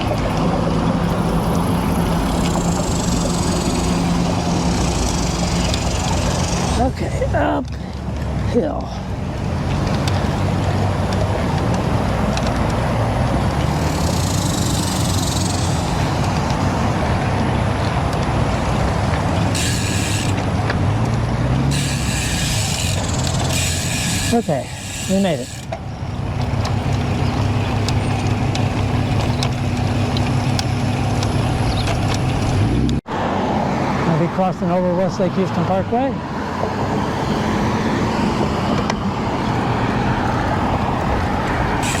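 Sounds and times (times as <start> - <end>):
wind rumbling on microphone: 0.0 - 24.0, 36.2 - 42.0
bicycle tyre noise: 0.0 - 33.0, 37.4 - 42.0
vehicle engine running: 0.0 - 33.0, 38.2 - 42.0.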